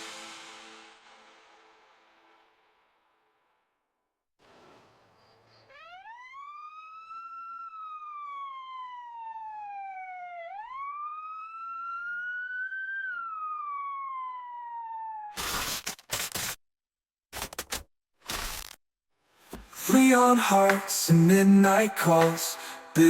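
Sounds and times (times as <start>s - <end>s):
wailing siren-like tone: 5.5s - 15.4s.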